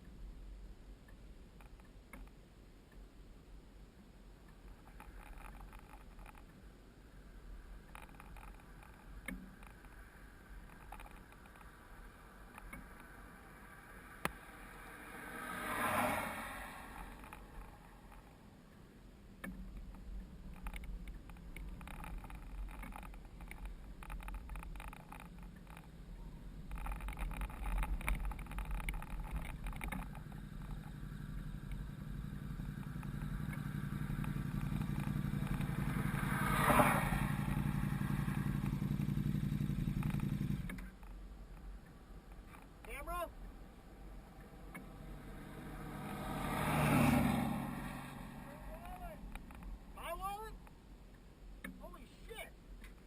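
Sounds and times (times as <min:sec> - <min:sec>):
rattles: 0:04.7 - 0:06.5, 0:07.8 - 0:13.3, 0:15.8 - 0:18.4, 0:19.5 - 0:41.7.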